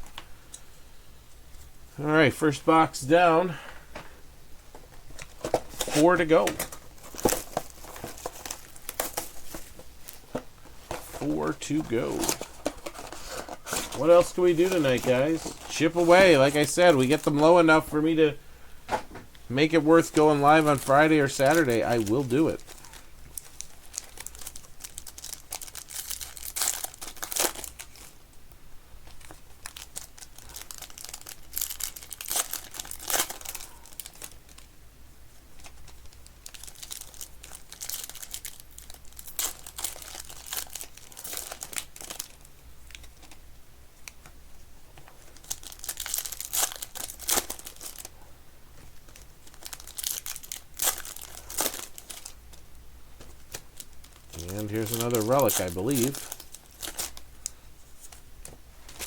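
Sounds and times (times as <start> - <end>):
packaging torn and crinkled: 5.4 - 10.2, 20.0 - 28.2, 29.1 - 34.7, 35.6 - 43.4, 45.2 - 48.1, 49.0 - 52.4, 53.4 - 58.2.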